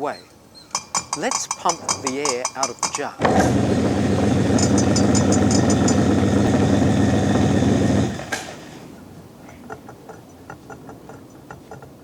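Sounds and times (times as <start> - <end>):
vacuum pump running: 3.2 - 8.8.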